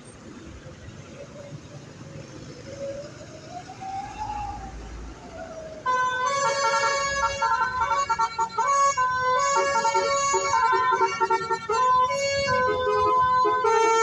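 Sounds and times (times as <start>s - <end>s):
engine and road noise: 0.0s - 14.0s
multi-tone bus horn melody: 5.8s - 14.0s.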